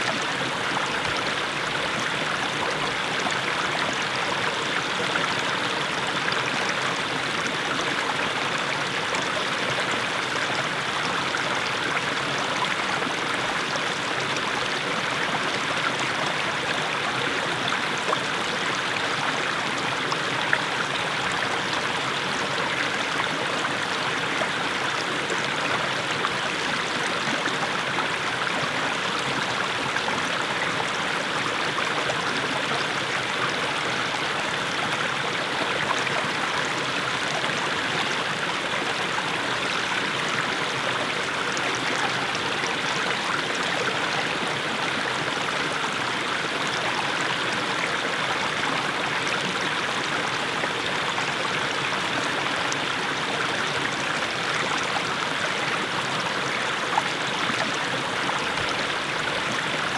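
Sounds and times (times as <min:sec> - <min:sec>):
stream babbling over stones: 0:00.0 - 0:59.9.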